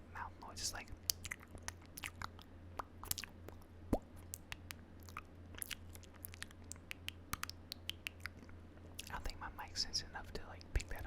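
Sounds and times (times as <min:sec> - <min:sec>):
mouth clicks and bites: 0:00.9 - 0:09.2.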